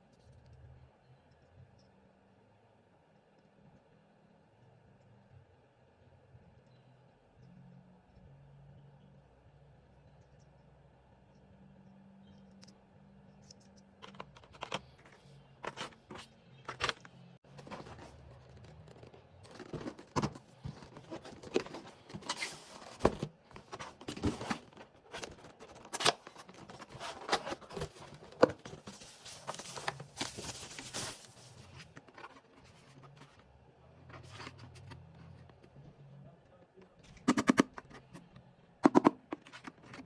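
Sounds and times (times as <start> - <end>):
box and wrapping rustling: 15.7 - 33.4
packaging clicks and knocks: 16.7 - 31.0.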